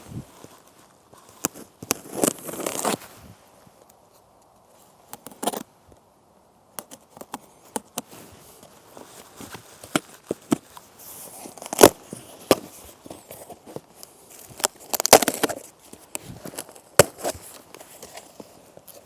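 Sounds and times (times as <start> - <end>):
tearing rustle: 0.0 - 3.4, 6.8 - 19.0.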